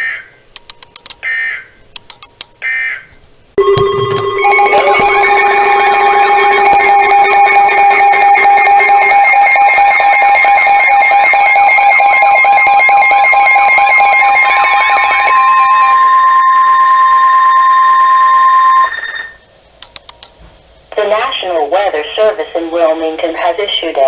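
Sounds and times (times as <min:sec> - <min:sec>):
warbling alarm tone: 0:03.6 - 0:19.5
steady alarm tones: 0:03.6 - 0:19.6.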